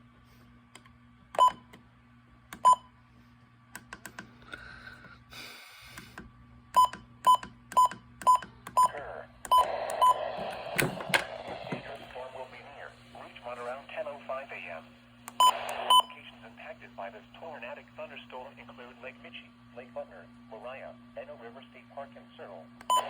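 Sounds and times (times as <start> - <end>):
radio static: 8.8 - 23.0.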